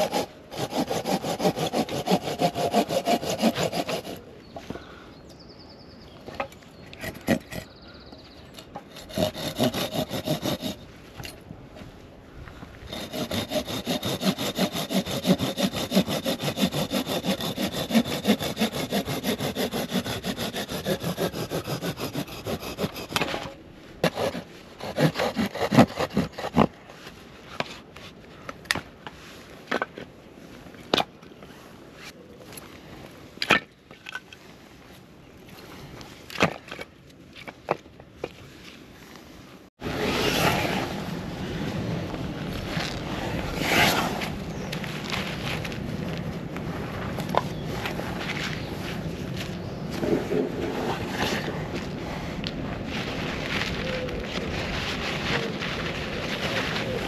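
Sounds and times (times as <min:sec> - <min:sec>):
hand saw cutting wood: 0:00.0 - 0:04.3, 0:07.0 - 0:07.7, 0:08.8 - 0:10.9, 0:12.9 - 0:26.8.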